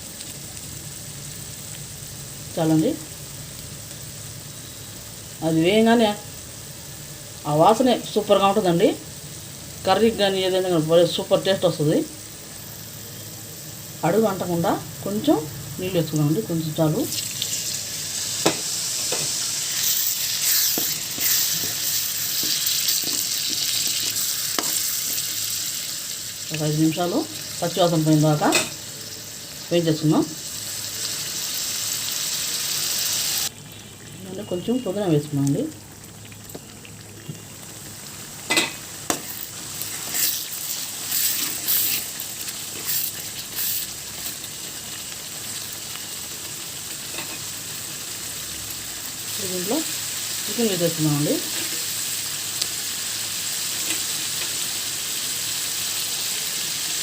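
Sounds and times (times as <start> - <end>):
spices sizzling in a pan: 0.0 - 57.0
spatula knocking on pan: 18.4 - 19.3
utensil scraping a pan: 18.5 - 25.2.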